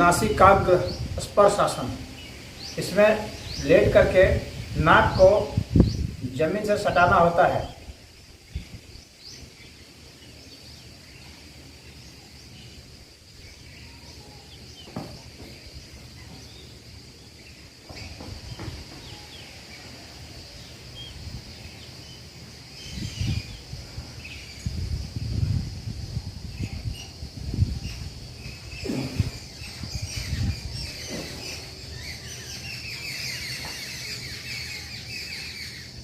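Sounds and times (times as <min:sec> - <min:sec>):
high insect drone: 0:00.0 - 0:36.0
bird chirps: 0:07.6 - 0:24.9, 0:26.5 - 0:36.0.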